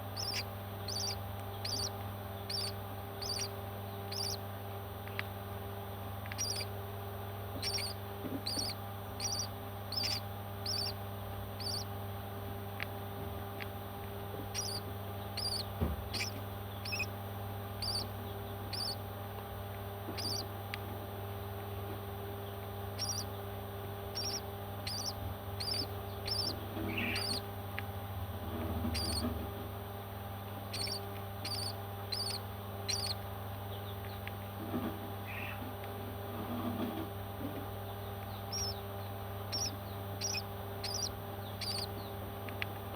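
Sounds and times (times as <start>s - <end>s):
steady low hum: 0.0s - 42.9s
baby parrots chirping: 0.1s - 4.4s, 6.3s - 6.7s, 7.6s - 11.0s, 11.6s - 11.9s, 14.5s - 17.2s, 17.8s - 18.1s, 18.7s - 19.0s, 20.1s - 20.5s, 22.9s - 23.4s, 24.1s - 27.5s, 28.7s - 29.3s, 30.7s - 33.2s, 35.2s - 35.6s, 38.3s - 38.8s, 39.4s - 42.1s.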